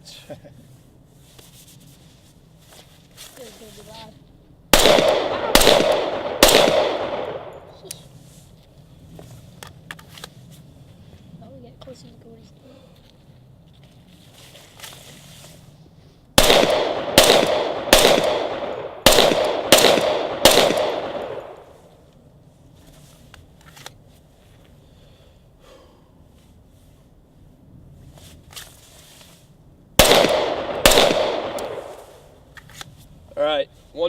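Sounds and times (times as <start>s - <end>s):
pistol shots with ringing tail: 4.7s - 7.8s, 16.4s - 21.7s, 30.0s - 32.1s.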